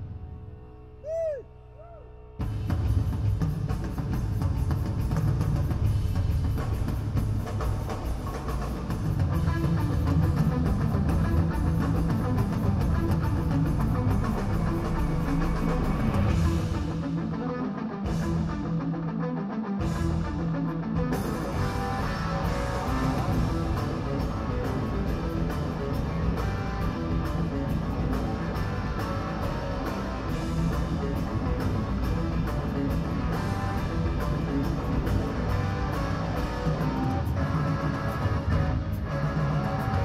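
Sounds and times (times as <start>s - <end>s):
drum kit: 2.4s - 17.4s, 21.0s - 40.0s
electric guitar: 2.4s - 40.0s.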